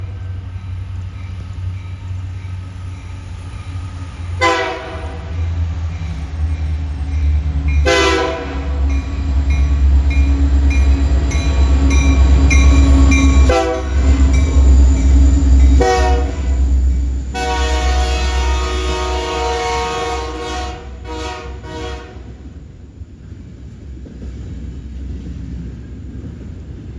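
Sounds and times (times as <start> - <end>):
diesel locomotive engine rumble: 0.0 - 26.9
train horn blasts: 4.4 - 5.5, 7.8 - 9.1, 13.2 - 14.5, 15.8 - 22.4.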